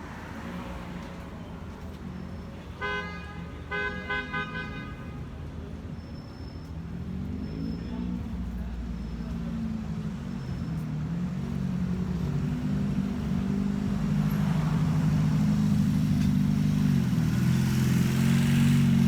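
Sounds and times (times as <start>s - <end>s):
street traffic rumble: 0.0s - 19.0s
car horn honking: 2.8s - 5.3s
vehicle engine: 5.6s - 19.0s.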